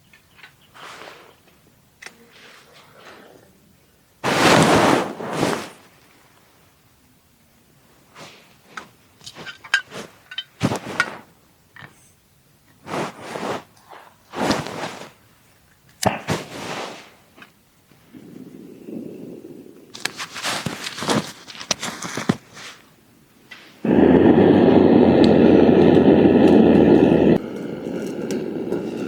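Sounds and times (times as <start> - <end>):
rustling and scraping: 4.2 - 6.4, 8.1 - 18.3, 19.9 - 23.8.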